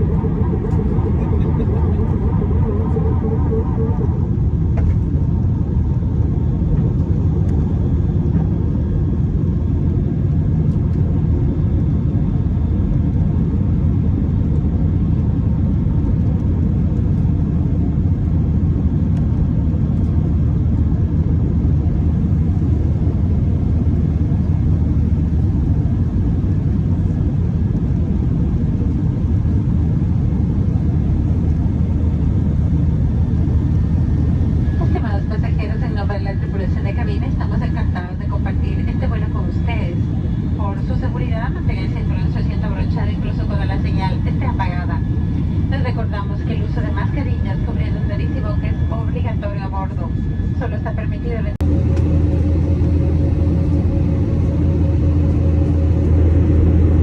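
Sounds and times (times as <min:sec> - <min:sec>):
airliner cabin rumble: 0:00.0 - 0:57.0.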